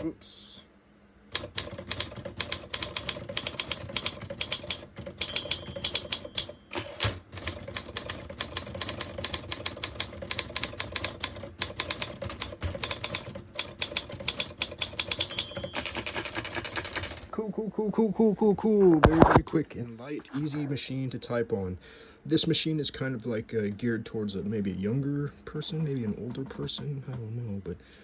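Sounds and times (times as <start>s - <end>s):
typewriter keys typing quickly: 1.4s - 17.3s.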